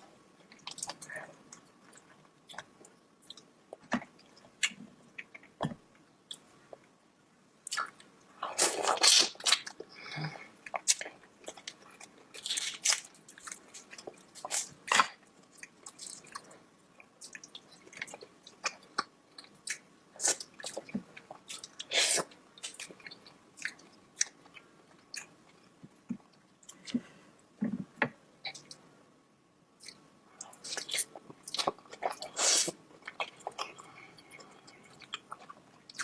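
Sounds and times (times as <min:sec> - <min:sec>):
bites and crunches: 0:07.7 - 0:09.8, 0:10.7 - 0:16.4.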